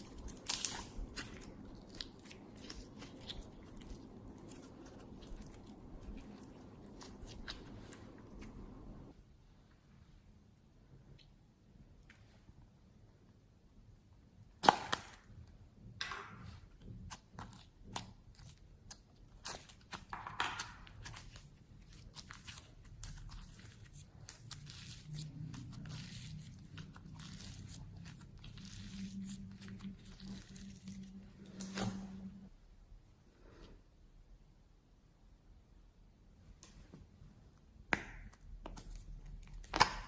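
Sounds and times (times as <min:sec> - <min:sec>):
slime crackling and popping: 0:00.0 - 0:09.0, 0:17.1 - 0:31.9, 0:38.0 - 0:40.0.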